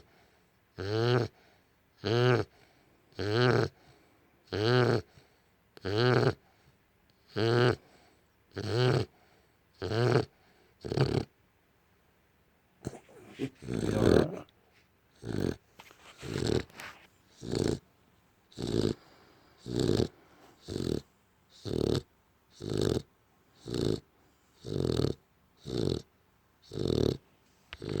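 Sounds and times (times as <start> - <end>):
dog snoring loudly: 0.8 - 3.8, 4.5 - 5.2, 5.8 - 6.4, 7.2 - 7.8, 8.5 - 9.2, 9.8 - 11.3, 12.8 - 14.5, 15.1 - 15.6, 16.2 - 16.8, 17.4 - 17.8, 18.5 - 27.2, 27.8 - 28.0.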